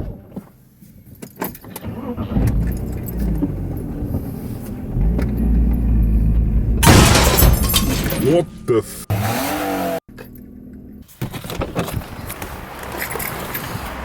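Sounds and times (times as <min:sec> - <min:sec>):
car engine running: 0:02.1 - 0:13.1.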